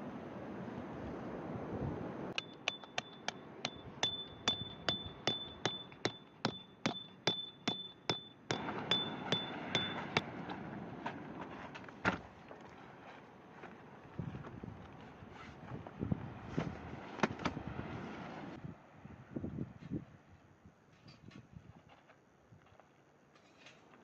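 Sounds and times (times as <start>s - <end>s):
hammer striking metal peg: 2.4s - 10.2s.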